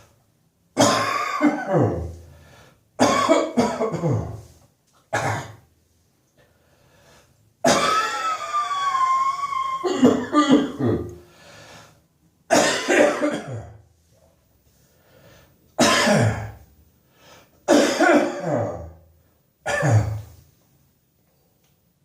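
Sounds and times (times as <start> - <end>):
person coughing: 0.8 - 2.2, 3.0 - 4.5, 5.1 - 5.7, 7.6 - 8.4, 9.8 - 11.2, 12.5 - 13.8, 15.8 - 16.6, 17.6 - 19.0, 19.6 - 20.3.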